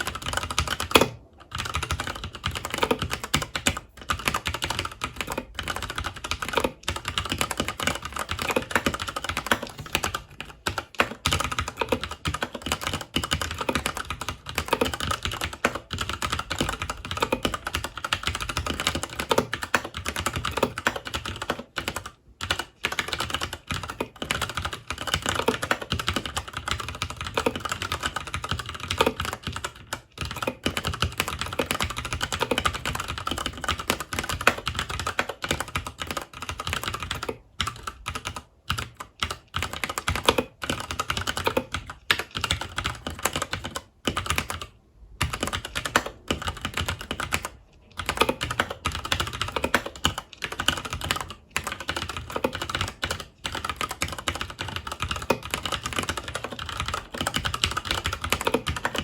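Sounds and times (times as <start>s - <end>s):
typing on mechanical keyboard: 0.0s - 59.0s.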